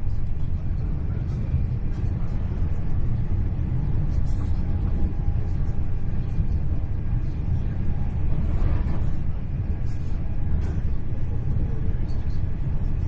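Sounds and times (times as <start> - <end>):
train rumbling at speed: 0.0 - 13.0.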